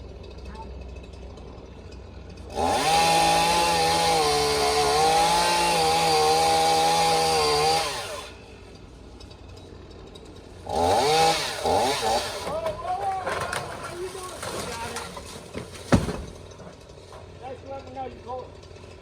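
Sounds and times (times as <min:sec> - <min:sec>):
chainsaw engine revving: 0:00.3 - 0:15.4.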